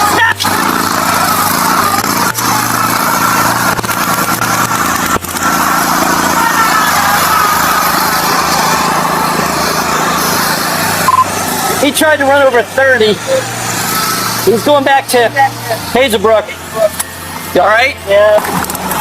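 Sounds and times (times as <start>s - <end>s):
lawn mower engine running: 0.0s - 19.0s.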